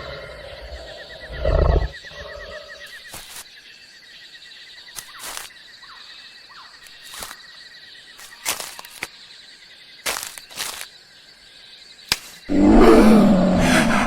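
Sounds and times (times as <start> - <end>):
high insect buzz: 0.0 - 3.6, 4.9 - 5.6, 6.8 - 11.0
twigs snapping: 5.0 - 5.5, 6.8 - 7.4, 8.2 - 9.1, 10.0 - 10.9, 12.1 - 12.4
large animal deep call: 12.5 - 14.0.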